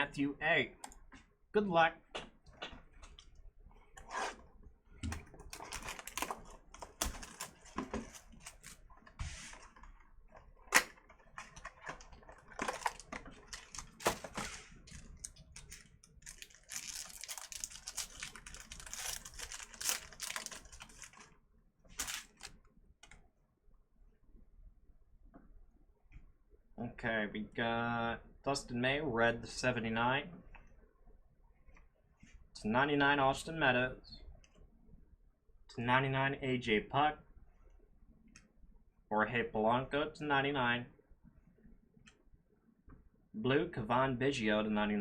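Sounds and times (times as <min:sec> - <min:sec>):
wrappers crinkling and tearing: 0:05.4 - 0:08.8, 0:10.7 - 0:21.4, 0:22.0 - 0:22.6
cards being handled: 0:22.0 - 0:22.6.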